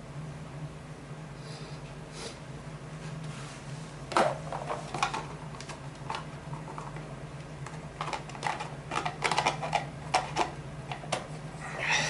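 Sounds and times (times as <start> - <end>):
steady low hum: 0.0 - 12.0
plastic parts clicking and scraping: 8.0 - 11.1.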